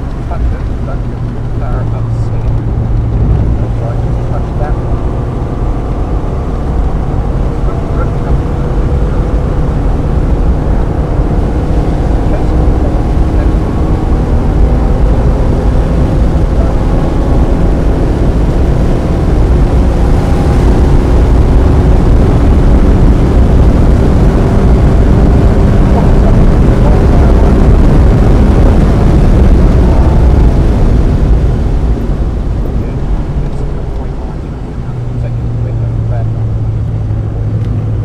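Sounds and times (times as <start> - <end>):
car engine pulling under load: 0.0 - 38.0
road and wind noise: 0.0 - 38.0.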